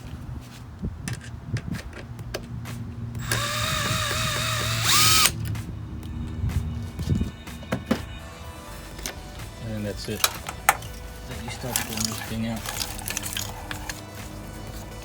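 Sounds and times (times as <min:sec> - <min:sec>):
power tool motor whining: 0:03.2 - 0:05.4
hand tools clicking and clanking: 0:10.0 - 0:14.1.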